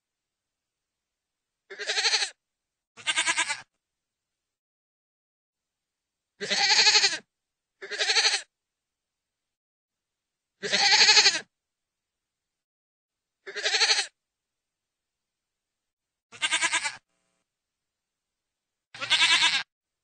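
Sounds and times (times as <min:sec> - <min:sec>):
goat bleating: 0:01.7 - 0:02.4, 0:03.0 - 0:03.7, 0:06.4 - 0:07.2, 0:07.8 - 0:08.5, 0:10.6 - 0:11.5, 0:13.4 - 0:14.2, 0:16.3 - 0:17.1, 0:19.0 - 0:19.7.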